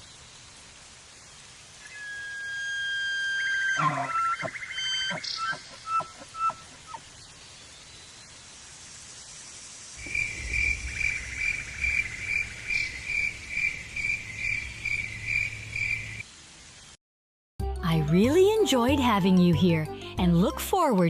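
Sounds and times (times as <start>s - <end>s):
cricket chirping: 3.8s - 16.2s.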